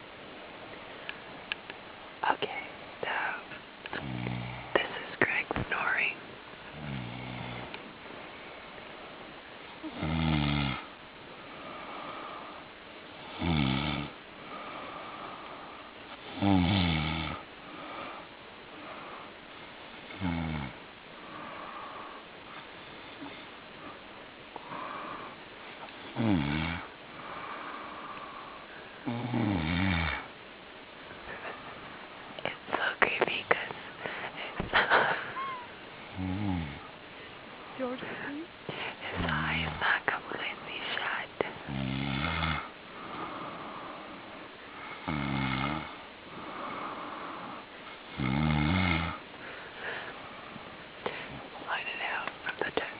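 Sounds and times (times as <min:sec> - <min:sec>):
man snoring: 0:04.0 - 0:04.7, 0:06.7 - 0:07.7, 0:09.9 - 0:10.9, 0:13.2 - 0:15.2, 0:16.3 - 0:18.1, 0:20.1 - 0:22.0, 0:26.1 - 0:27.8, 0:29.0 - 0:30.3, 0:36.1 - 0:36.9, 0:41.7 - 0:44.1, 0:44.9 - 0:49.2
soft breathing: 0:11.4 - 0:12.8, 0:14.4 - 0:16.0, 0:21.1 - 0:26.1, 0:27.1 - 0:29.0, 0:31.1 - 0:35.8, 0:36.8 - 0:41.7, 0:42.6 - 0:45.1, 0:46.0 - 0:48.1, 0:49.3 - 0:52.9.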